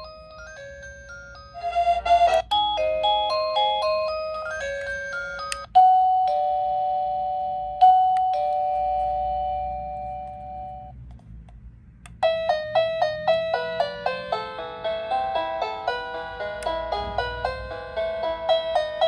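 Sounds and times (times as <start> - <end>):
doorbell melody of short notes: 0.0 - 10.9
two-tone ding-dong chime: 0.0 - 10.9.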